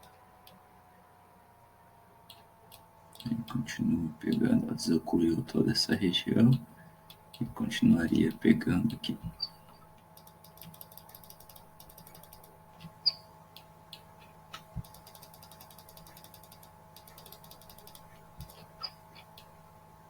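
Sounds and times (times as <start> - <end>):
faint steady hum: 0.0 - 20.0
mouse scroll wheel ticking: 10.1 - 12.6, 14.8 - 19.5
mouse clicks: 10.1 - 19.5.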